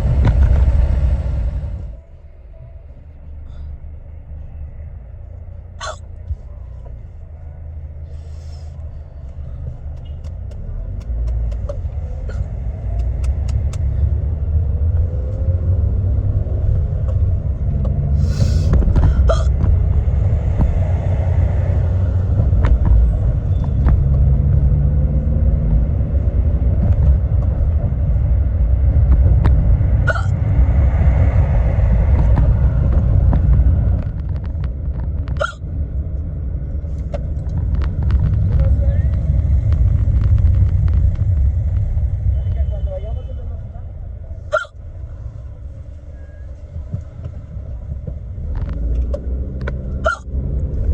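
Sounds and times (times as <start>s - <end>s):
car cabin road rumble: 0.0s - 50.9s
woman hiccuping: 5.8s - 6.1s, 30.1s - 30.3s, 35.4s - 35.6s, 44.5s - 44.8s, 50.0s - 50.2s.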